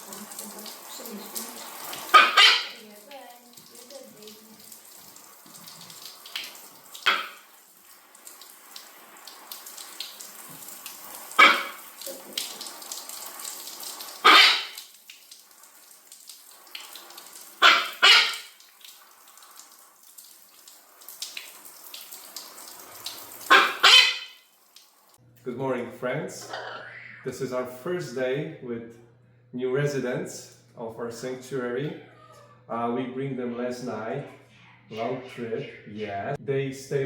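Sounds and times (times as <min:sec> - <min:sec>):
running water from tap: 0:00.0 - 0:25.2
macaw squawking: 0:02.1 - 0:02.8, 0:07.0 - 0:07.4, 0:11.4 - 0:11.8, 0:14.2 - 0:14.8, 0:17.6 - 0:18.6, 0:23.5 - 0:24.4.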